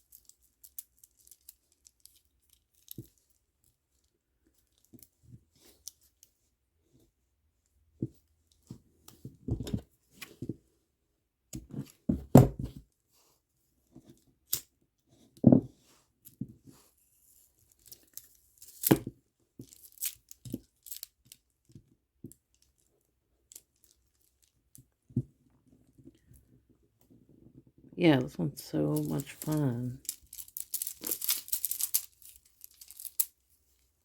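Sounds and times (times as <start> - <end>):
plastic beads clicking: 0.0 - 3.2, 19.7 - 21.4, 29.0 - 33.4.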